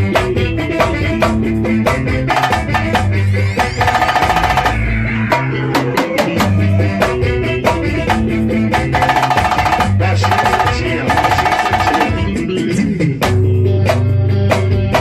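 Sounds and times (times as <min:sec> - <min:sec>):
band playing instrumental groove: 0:00.0 - 0:15.0
fast high riff: 0:02.2 - 0:12.5.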